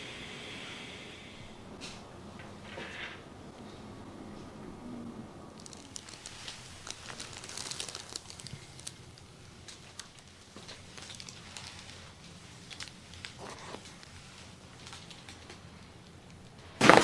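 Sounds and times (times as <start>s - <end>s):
fabric rustling and crinkling: 5.6s - 17.0s.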